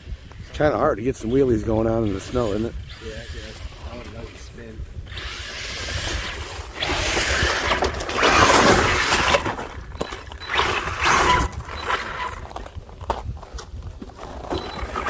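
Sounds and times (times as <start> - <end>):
rc truck motor whining: 1.3 - 12.5
tyres spinning spraying snow: 3.4 - 9.6.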